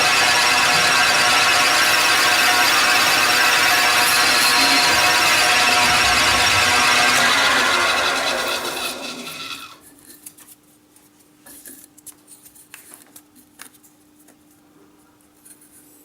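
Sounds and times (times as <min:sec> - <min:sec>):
metal lathe tool squealing: 0:00.0 - 0:09.8.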